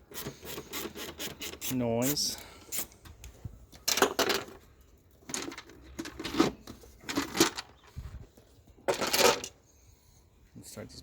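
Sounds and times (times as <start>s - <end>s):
plastic parts scraping and rubbing: 5.2s - 8.2s.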